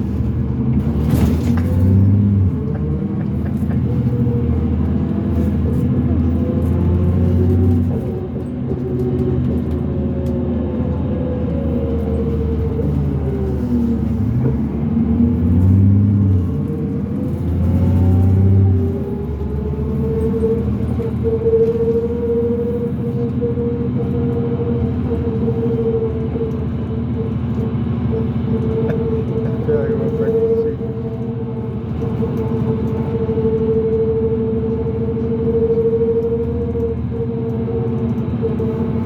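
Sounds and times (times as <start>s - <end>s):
bus diesel engine pulling hard: 0.0s - 39.0s.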